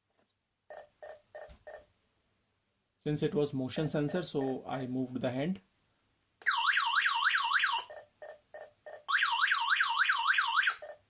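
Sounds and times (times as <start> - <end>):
alarm siren warbling: 6.5 - 7.9, 9.1 - 11.0.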